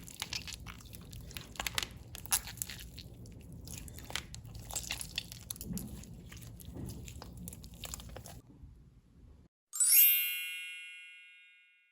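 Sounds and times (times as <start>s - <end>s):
slime being squished: 0.0s - 8.4s
bell-like chime: 9.7s - 11.9s.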